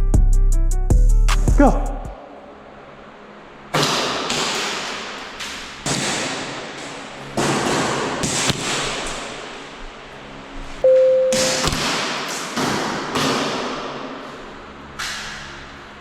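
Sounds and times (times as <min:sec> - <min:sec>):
airsoft guns firing: 0:05.8 - 0:09.5, 0:11.4 - 0:14.0.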